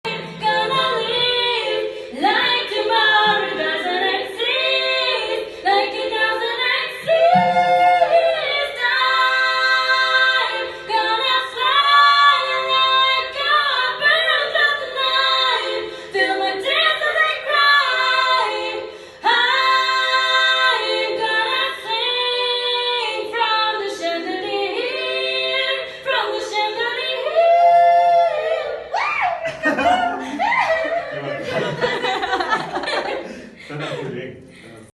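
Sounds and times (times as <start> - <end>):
group singing a cappella: 0.0 - 34.4.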